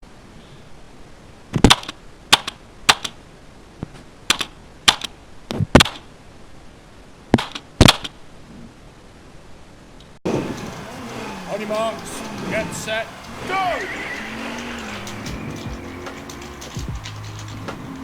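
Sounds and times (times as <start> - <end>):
hand slapping computer keyboard: 1.6 - 3.2, 4.3 - 5.1.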